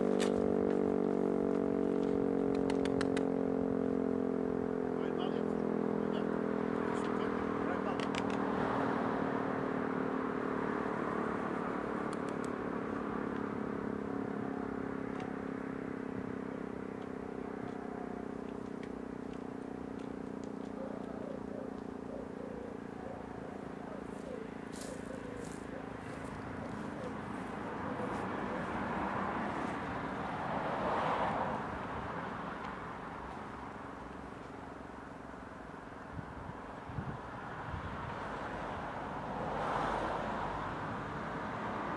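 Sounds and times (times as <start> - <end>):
car passing: 0.0 - 41.9.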